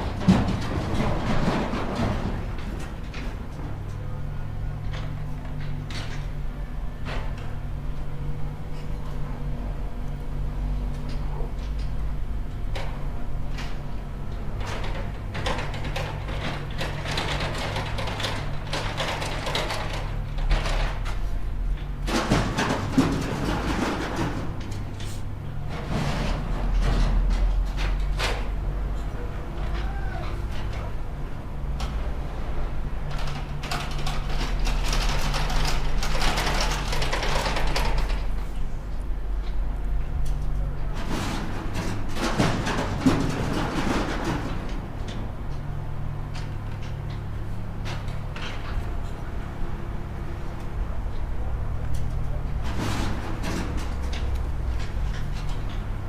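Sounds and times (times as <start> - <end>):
bulldozer diesel engine running: 0.0 - 56.0
metallic clanking of tracks: 12.7 - 31.0, 33.0 - 49.5.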